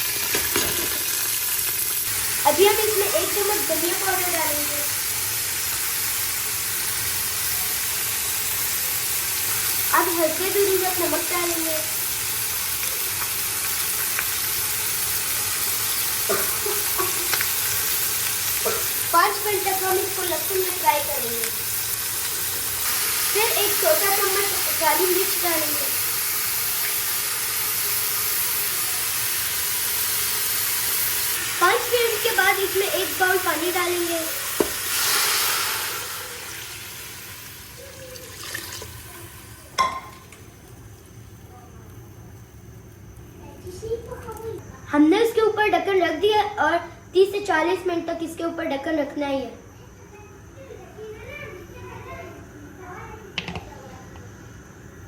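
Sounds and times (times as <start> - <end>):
loud steaming hiss: 0.0 - 39.8
meat sizzling in oil: 0.0 - 41.4.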